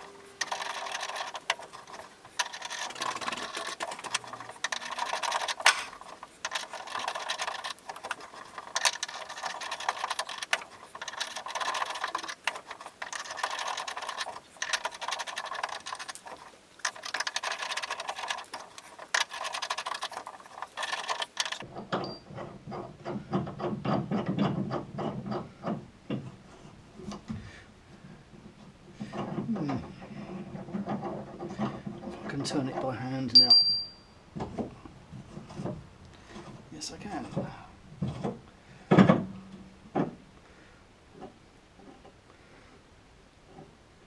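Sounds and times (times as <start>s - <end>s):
die cutting thread on bolt: 0.0s - 21.6s.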